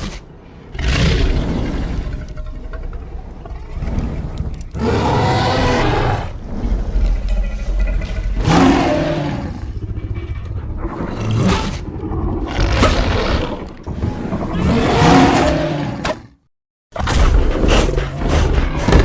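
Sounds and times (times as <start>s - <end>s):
dinosaur roar: 0.0s - 16.2s
low rumbling: 0.2s - 15.2s.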